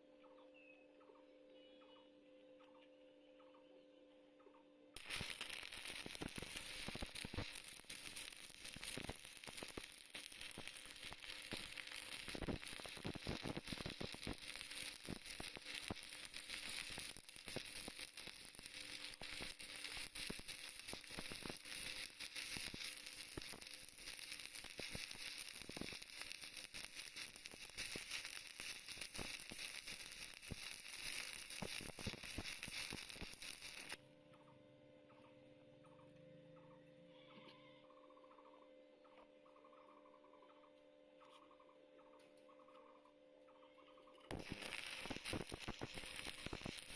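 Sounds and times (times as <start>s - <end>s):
welding arc crackling and sizzling: 5.0s - 34.0s, 44.2s - 46.9s.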